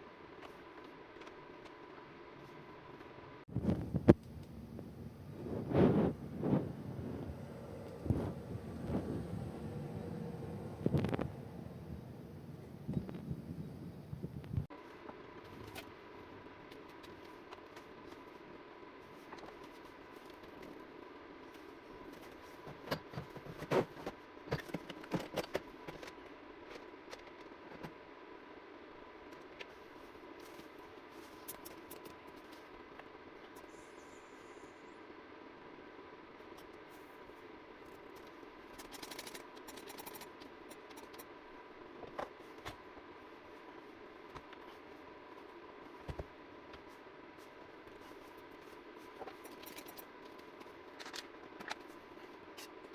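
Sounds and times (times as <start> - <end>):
faint steady hum: 0.0 - 52.9
steady low hum: 3.5 - 14.7
small objects clicking and scraping: 38.1 - 41.3.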